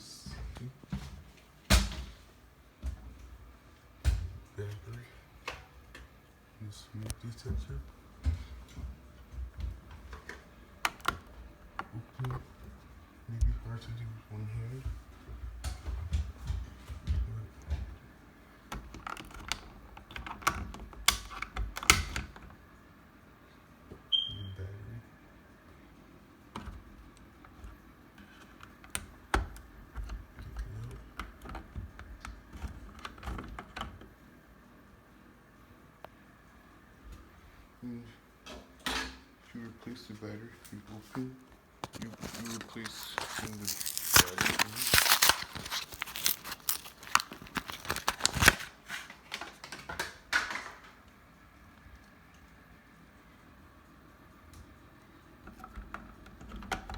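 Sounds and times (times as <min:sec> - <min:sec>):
plastic clicks and crinkling: 0:18.7 - 0:22.6, 0:41.8 - 0:51.0.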